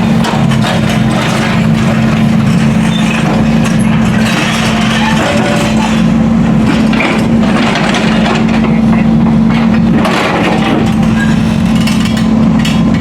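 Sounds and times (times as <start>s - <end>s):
heavy machinery engine running: 0.0s - 13.0s.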